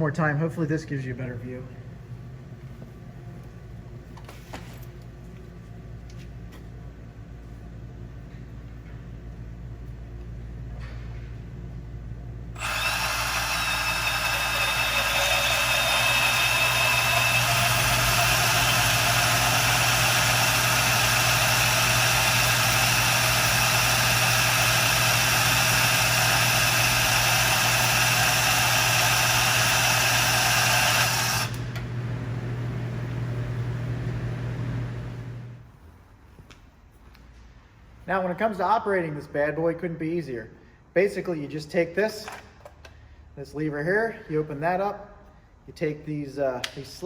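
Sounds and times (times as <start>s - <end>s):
bandsaw cutting metal: 12.6s - 31.7s
motor humming: 12.6s - 35.6s.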